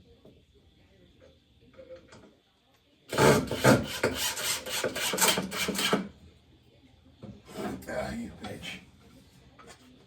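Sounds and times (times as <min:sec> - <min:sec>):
wood scraping back and forth: 0:03.1 - 0:06.1, 0:07.4 - 0:07.9.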